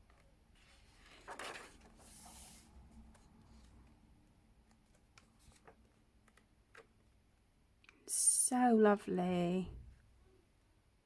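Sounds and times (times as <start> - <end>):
paper pages rustling: 0.1 - 4.0, 4.6 - 6.9.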